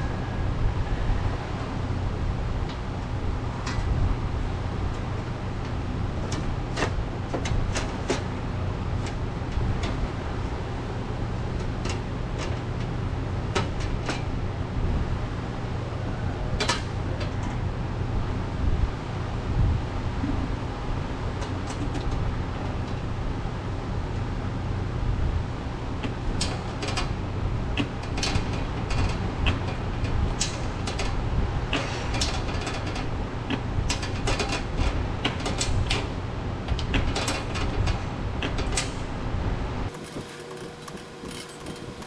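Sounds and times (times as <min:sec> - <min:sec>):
sharp clicks and knocks: 0:39.9 - 0:42.0.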